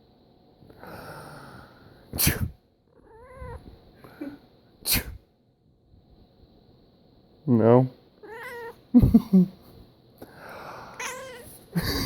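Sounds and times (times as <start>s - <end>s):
cat meowing: 3.0s - 3.6s, 8.2s - 8.8s, 11.0s - 11.6s.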